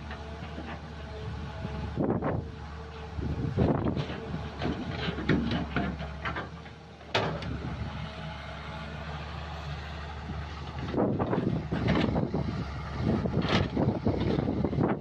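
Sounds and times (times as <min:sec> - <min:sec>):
excavator diesel engine running: 0:00.0 - 0:15.0
knocks and clatter: 0:03.6 - 0:07.6.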